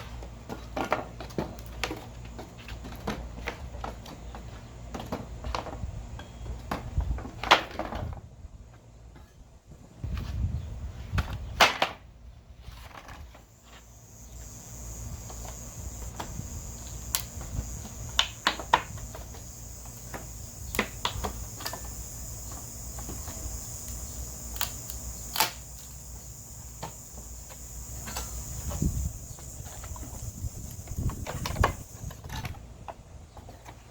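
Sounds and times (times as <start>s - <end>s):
high-pitched hiss: 13.4s - 32.4s
wood cracking and nails pulling: 23.8s - 26.0s.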